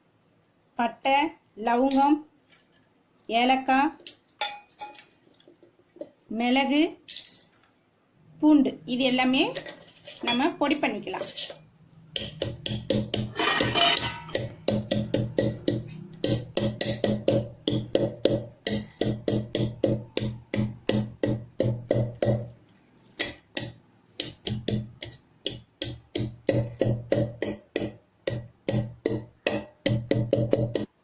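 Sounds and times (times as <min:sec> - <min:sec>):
pestle pounding in a mortar: 0:12.1 - 0:22.6, 0:23.2 - 0:31.0.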